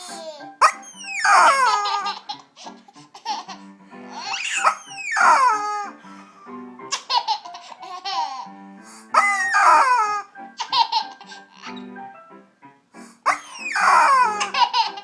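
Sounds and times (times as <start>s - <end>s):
toy chicken squawks: 0.0s - 2.4s, 4.1s - 5.7s, 9.2s - 11.8s, 13.3s - 15.0s
baby laughing: 0.0s - 6.0s, 6.9s - 11.9s, 13.3s - 15.0s.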